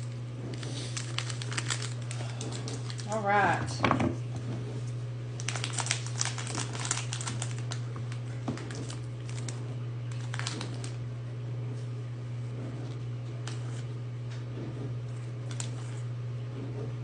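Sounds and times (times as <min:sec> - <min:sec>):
plastic wrapper crinkling: 0:00.0 - 0:03.2, 0:05.4 - 0:11.0, 0:15.4 - 0:16.0
steady low hum: 0:00.0 - 0:17.0.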